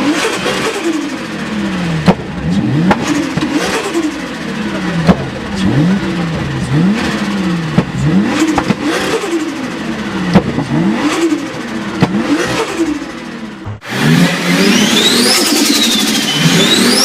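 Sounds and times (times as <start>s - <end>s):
car engine revving in blips: 0.0s - 17.0s.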